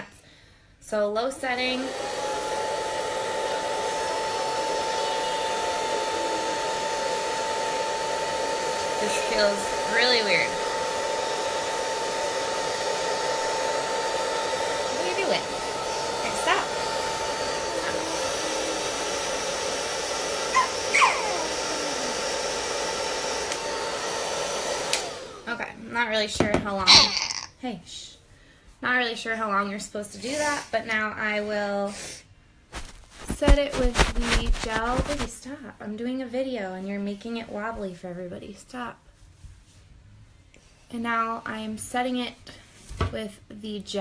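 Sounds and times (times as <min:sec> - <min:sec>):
hair dryer running: 0:01.4 - 0:27.2, 0:32.8 - 0:35.4.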